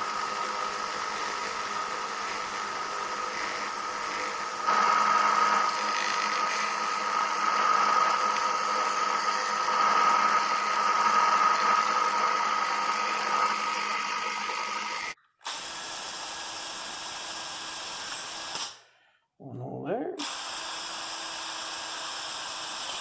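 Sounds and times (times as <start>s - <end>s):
belt sander whining: 0.0s - 15.7s.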